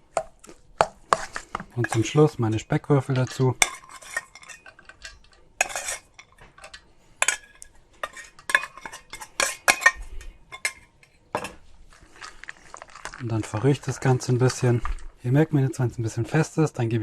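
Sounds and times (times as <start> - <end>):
metal utensil scraping a pot: 1.1 - 11.6.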